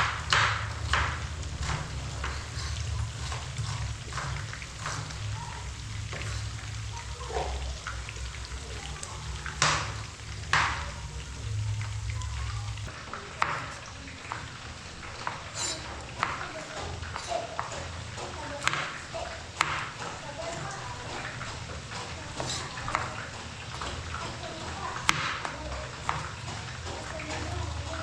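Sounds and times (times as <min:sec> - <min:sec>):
stirring scrapes in pan: 0:00.0 - 0:08.7, 0:09.4 - 0:28.0
low hum: 0:00.0 - 0:12.9
food sizzling in oil: 0:00.0 - 0:28.0.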